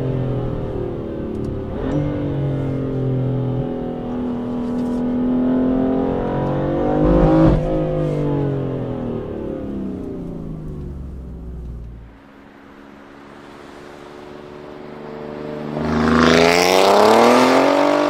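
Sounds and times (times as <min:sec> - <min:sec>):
sports car engine accelerating: 0:00.0 - 0:12.2.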